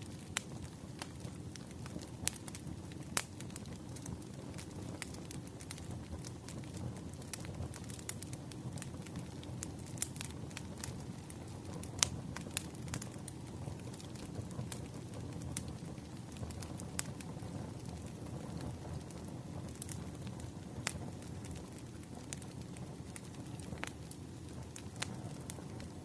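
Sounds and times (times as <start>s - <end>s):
firewood crackling and popping: 0.0s - 26.0s
low rumble of fire: 0.0s - 26.0s.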